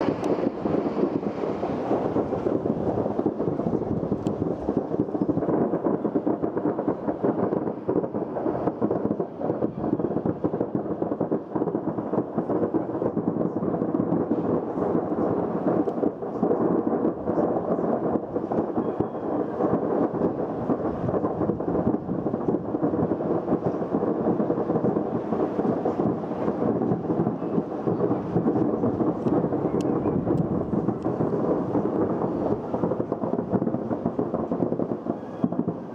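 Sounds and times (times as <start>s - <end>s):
mass of fireworks crackling: 0.0s - 35.9s.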